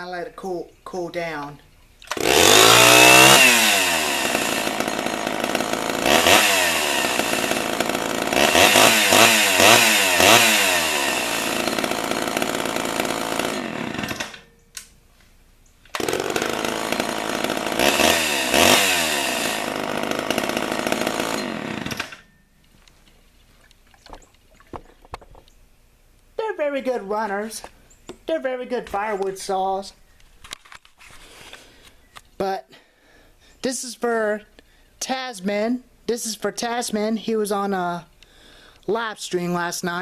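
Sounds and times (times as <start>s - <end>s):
chainsaw engine revving: 2.0s - 14.5s, 15.9s - 22.3s.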